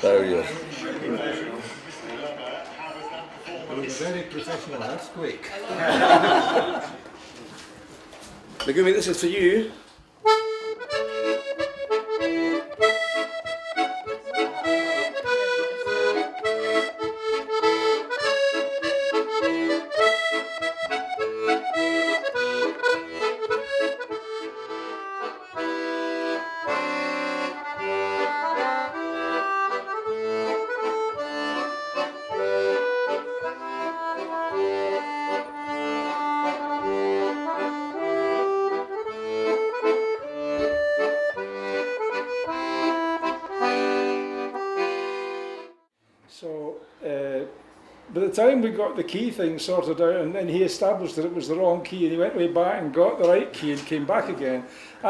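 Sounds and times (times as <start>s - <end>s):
accordion playing a tune: 0.0s - 2.4s, 8.7s - 45.9s.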